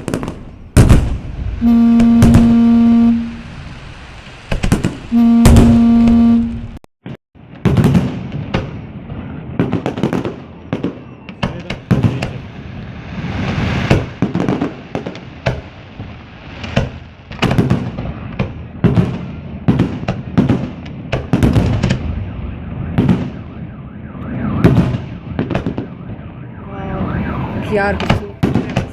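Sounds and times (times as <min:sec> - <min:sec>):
fireworks bursting: 0:00.0 - 0:06.8, 0:07.5 - 0:28.9
held electronic tone: 0:01.6 - 0:03.7, 0:05.0 - 0:06.8.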